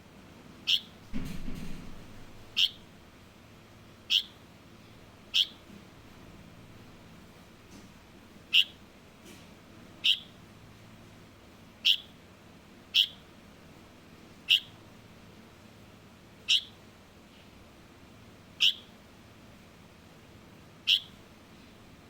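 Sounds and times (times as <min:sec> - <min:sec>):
bird chirping: 0:00.6 - 0:01.0, 0:01.8 - 0:02.9, 0:04.1 - 0:04.4, 0:05.3 - 0:05.6, 0:08.5 - 0:08.8, 0:10.0 - 0:10.4, 0:11.8 - 0:12.2, 0:12.9 - 0:13.2, 0:14.5 - 0:14.8, 0:16.5 - 0:16.8, 0:18.6 - 0:18.9, 0:20.8 - 0:21.2.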